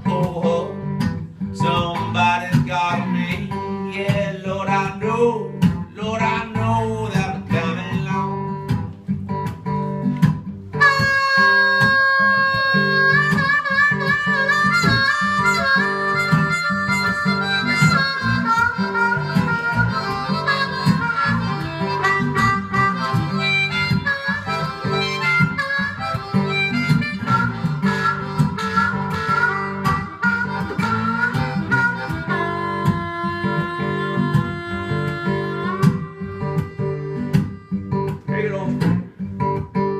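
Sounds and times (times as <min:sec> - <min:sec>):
acoustic guitar picking: 0:00.0 - 0:39.9
harmonica playing: 0:10.7 - 0:38.9.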